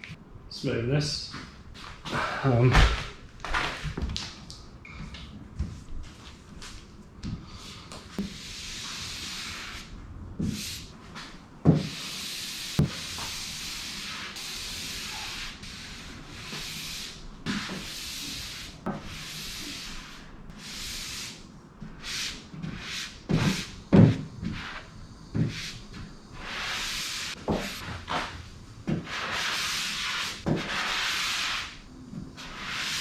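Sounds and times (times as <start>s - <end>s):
scraping hiss of rubbing strokes: 7.6s - 21.4s, 22.0s - 33.0s.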